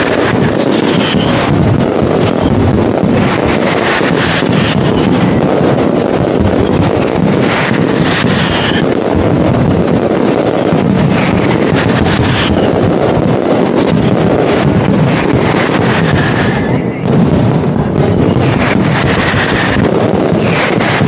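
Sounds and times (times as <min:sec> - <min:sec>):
fireworks crackling: 0:00.0 - 0:21.0
fireworks explosions rumbling: 0:00.0 - 0:21.0.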